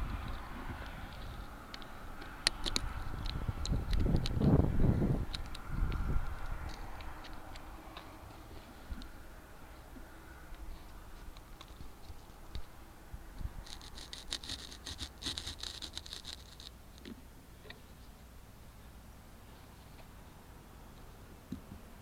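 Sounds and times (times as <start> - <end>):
rapid high ticking: 13.6 - 16.8.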